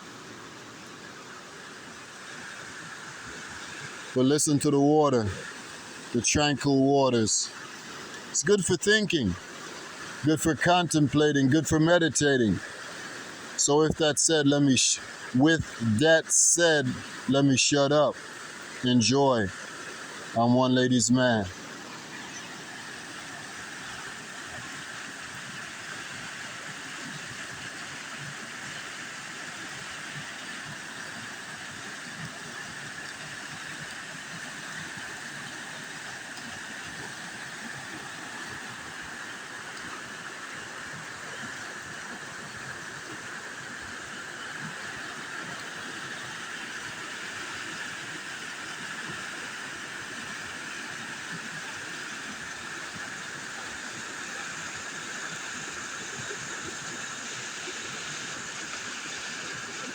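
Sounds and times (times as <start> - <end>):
water rushing over waterfall: 1.6 - 59.9.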